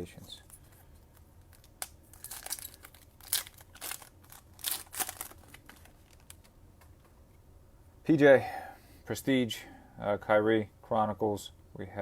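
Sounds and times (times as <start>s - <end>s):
card pack rustling: 1.5s - 6.5s.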